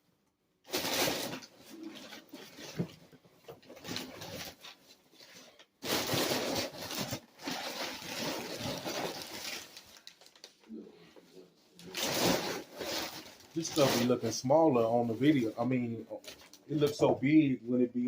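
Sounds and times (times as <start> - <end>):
packaging rustling and crinkling: 0.7 - 10.7, 11.8 - 15.5.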